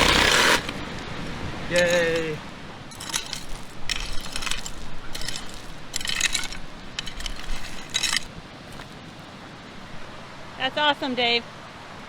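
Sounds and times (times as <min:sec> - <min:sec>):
shovel scraping gravelly soil: 0:00.0 - 0:09.0.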